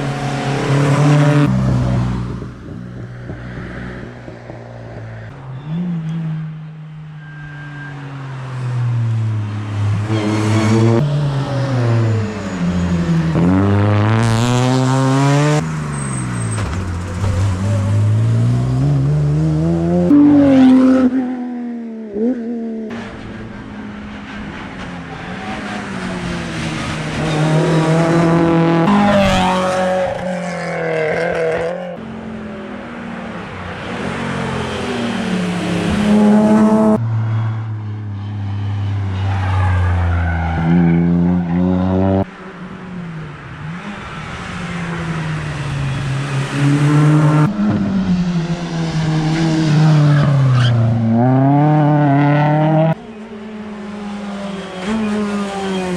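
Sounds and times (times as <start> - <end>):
rally car engines accelerating: 9.3 - 21.4, 39.2 - 55.9.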